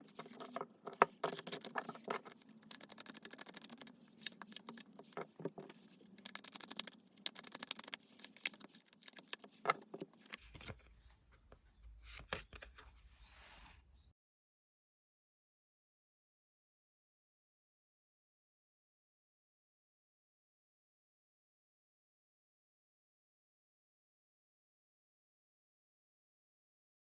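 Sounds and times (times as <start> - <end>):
cards being shuffled: 0.0 - 10.7.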